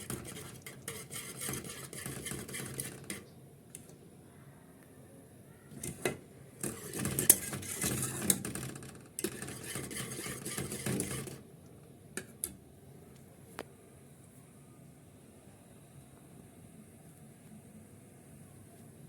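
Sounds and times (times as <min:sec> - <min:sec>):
utensil scraping in a pot: 0:00.0 - 0:03.4, 0:05.8 - 0:11.4.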